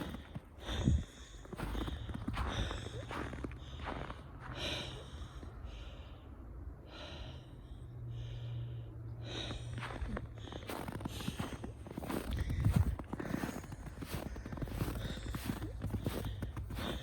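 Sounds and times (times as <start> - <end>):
footsteps on snow and ice: 0.0 - 4.8, 9.5 - 17.0
breathing close to microphone: 6.9 - 17.0.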